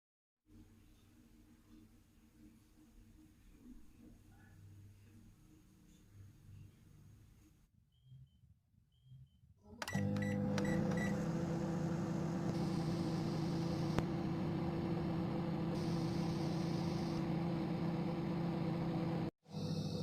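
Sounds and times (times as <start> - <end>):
microwave humming: 9.7 - 20.0
microwave keypad beeps: 9.9 - 11.3
click: 13.9 - 14.1.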